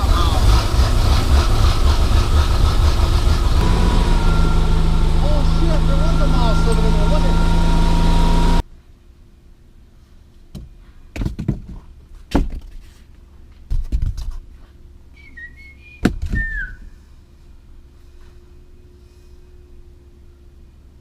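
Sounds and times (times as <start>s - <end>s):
squeaky whistling tones: 3.6s - 8.6s, 15.2s - 16.9s.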